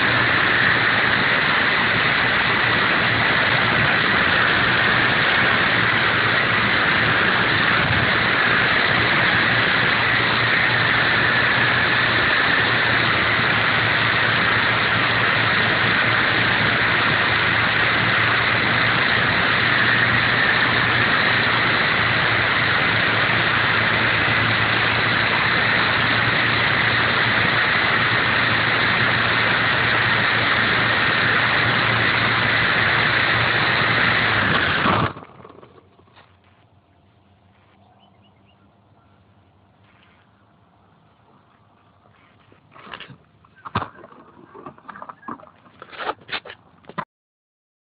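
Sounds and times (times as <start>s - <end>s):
model helicopter motors and rotors: 0.0s - 36.1s.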